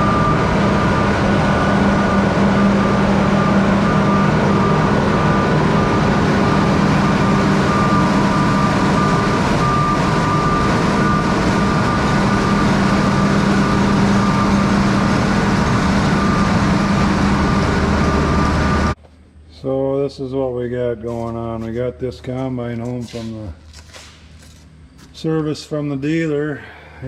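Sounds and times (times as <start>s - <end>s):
combine harvester engine running: 0.0s - 19.0s.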